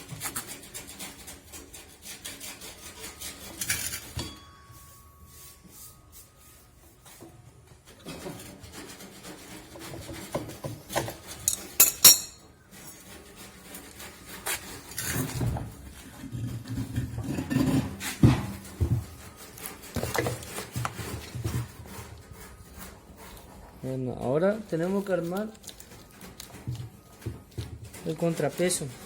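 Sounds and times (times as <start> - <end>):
metal tools clinking and knocking: 3.6 - 4.7, 11.4 - 13.0.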